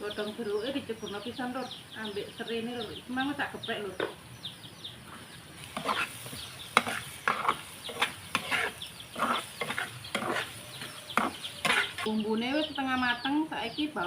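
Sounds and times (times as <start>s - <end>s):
faint frying sizzle: 0.0s - 14.0s
spatula scraping a pan: 5.1s - 12.1s.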